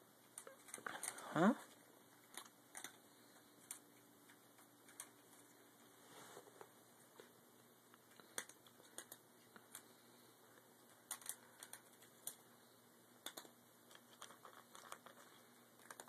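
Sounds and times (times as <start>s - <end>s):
cats eating: 0.0s - 16.0s.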